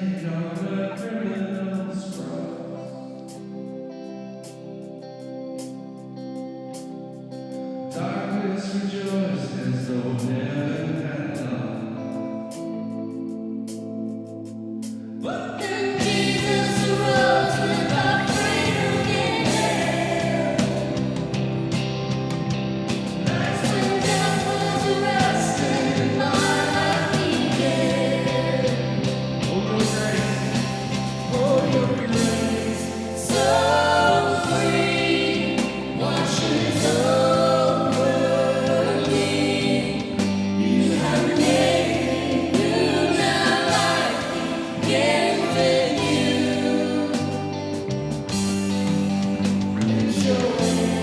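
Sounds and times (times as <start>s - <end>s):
band playing worship song: 0.0s - 51.0s
voices singing together: 15.0s - 51.0s.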